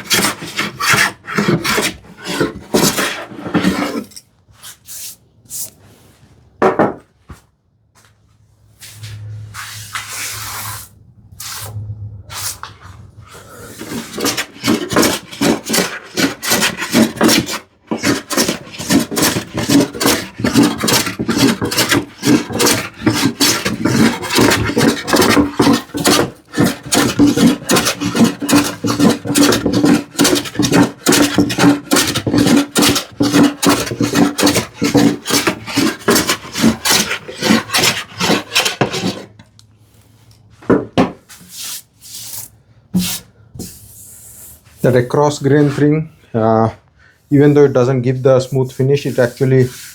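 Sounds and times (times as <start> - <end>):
hand plane rasping strokes on wood: 0.0 - 4.1, 13.7 - 39.4, 48.5 - 49.9.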